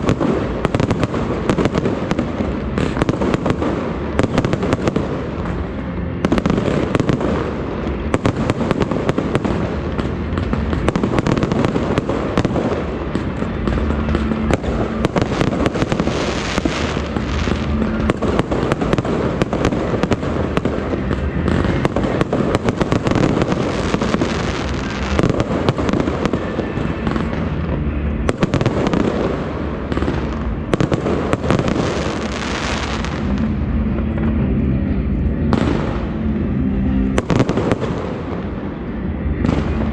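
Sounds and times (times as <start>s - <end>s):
fireworks bangs and crackles: 0.0s - 39.9s
low rumble: 0.0s - 39.9s.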